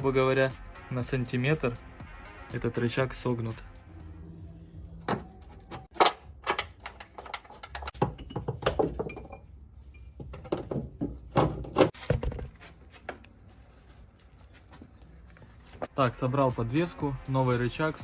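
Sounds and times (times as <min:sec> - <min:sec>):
metal parts and tools clanking: 0:05.0 - 0:12.0.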